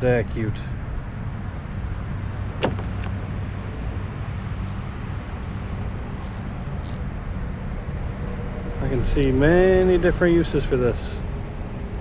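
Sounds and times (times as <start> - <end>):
vehicle engine humming: 0.0 - 12.0
sharp click: 2.6 - 3.2, 4.6 - 4.9, 6.2 - 7.0.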